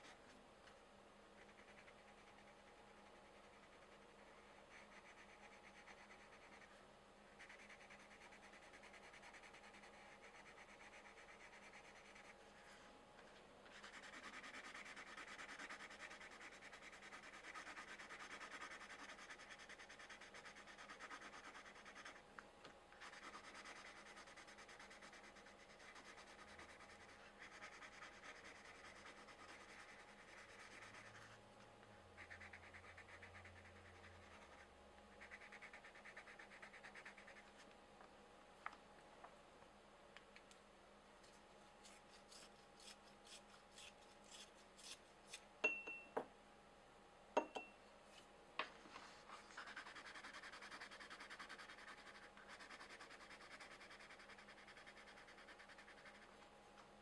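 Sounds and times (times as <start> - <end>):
pencils scratching on paper: 1.4 - 12.7, 13.7 - 22.2, 23.0 - 31.4, 32.2 - 37.6, 48.9 - 56.4.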